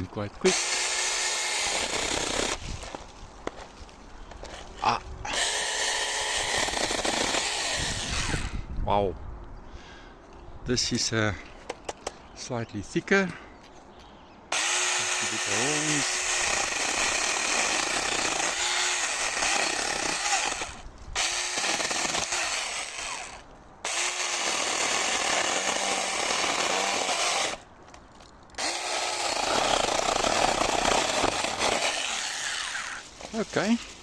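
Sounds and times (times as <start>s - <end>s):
electric mini chainsaw motor: 0.5s - 2.6s, 5.3s - 8.6s, 14.5s - 27.6s, 28.6s - 33.0s
chain rasping through wood: 28.6s - 33.0s.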